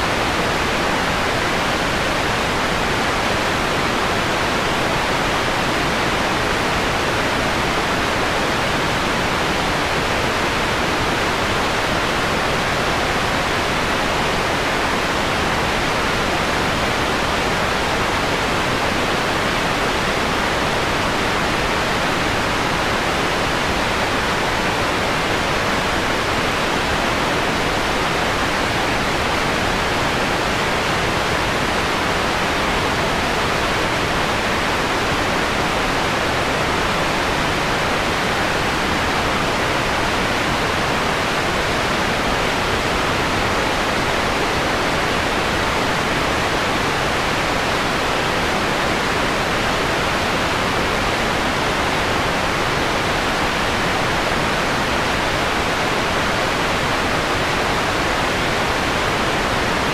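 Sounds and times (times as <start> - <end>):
filtered white noise: 0.0 - 59.9.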